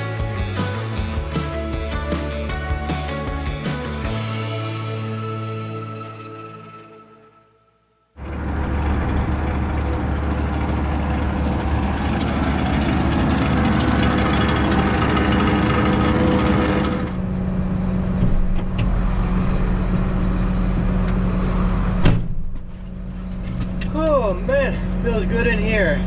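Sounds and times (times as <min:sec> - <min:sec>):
tractor engine running: 0:08.2 - 0:26.0.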